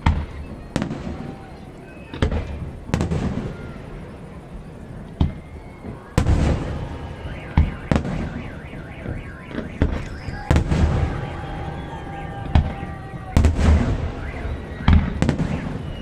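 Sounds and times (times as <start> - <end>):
fireworks bursting: 0.0 - 16.0
car alarm siren: 3.5 - 16.0.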